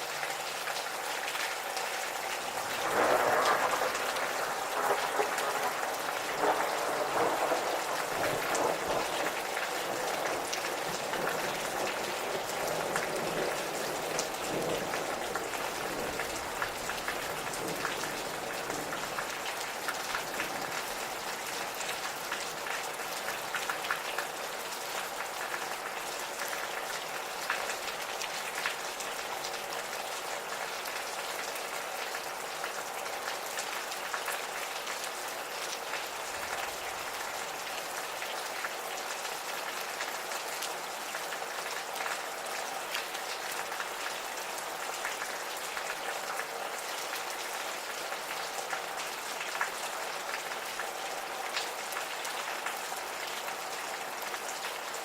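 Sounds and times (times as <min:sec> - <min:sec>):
gentle rain: 0:00.0 - 0:55.0
distant thunder rumble: 0:02.7 - 0:19.4.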